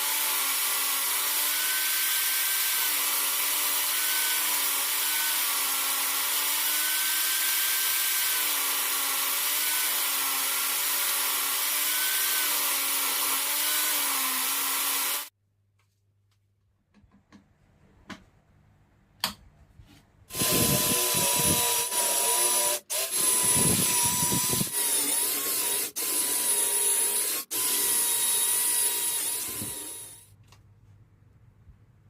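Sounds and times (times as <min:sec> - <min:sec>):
electric power tool whining: 0:20.3 - 0:30.2.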